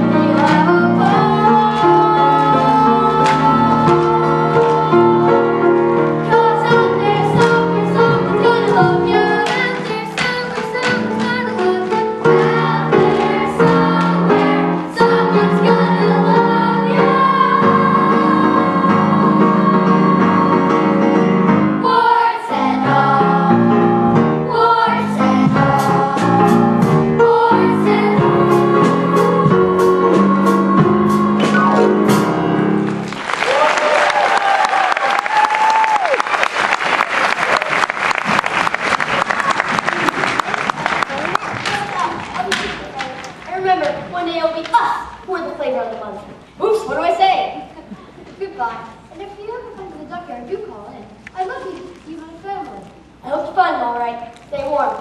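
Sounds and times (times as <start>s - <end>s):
instrumental accompaniment: 0.0s - 33.3s
voices singing a show tune: 21.8s - 23.9s, 24.5s - 32.0s.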